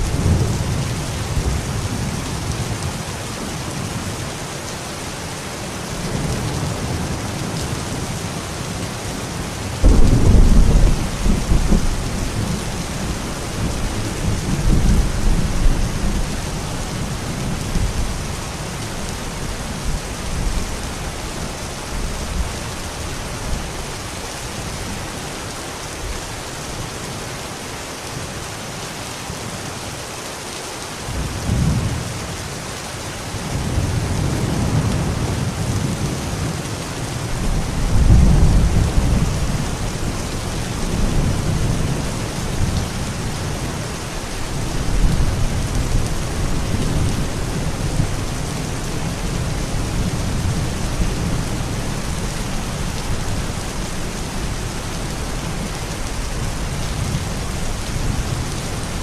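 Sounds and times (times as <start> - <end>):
heavy rain hissing: 0.0 - 59.0
thunder rumbling: 9.7 - 21.0, 37.3 - 43.7.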